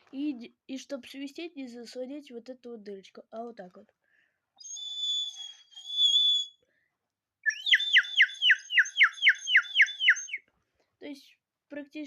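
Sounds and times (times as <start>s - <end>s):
water bird whistle: 4.6s - 6.6s, 7.4s - 10.4s.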